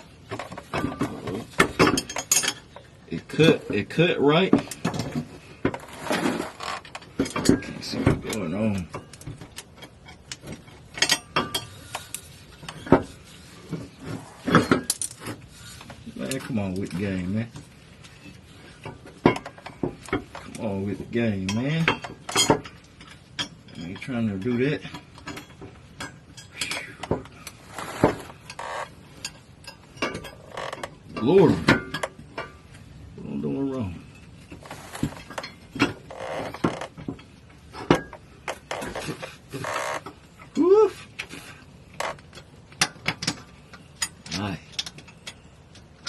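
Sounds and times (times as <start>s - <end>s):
tools clinking on metal: 0.7s - 2.9s, 7.0s - 13.0s, 21.4s - 27.6s, 28.5s - 32.6s.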